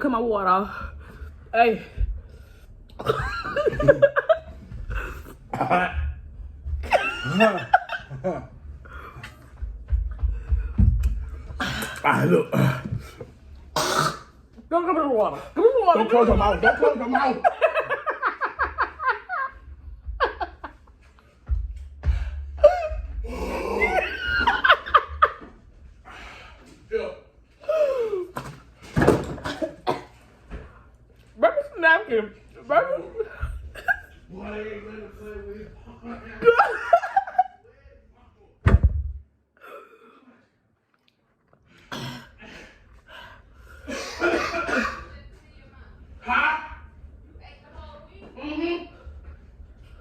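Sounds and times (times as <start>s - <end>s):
people laughing: 3.0s - 6.2s, 6.8s - 9.4s, 15.6s - 21.4s, 22.6s - 25.6s, 35.8s - 37.8s.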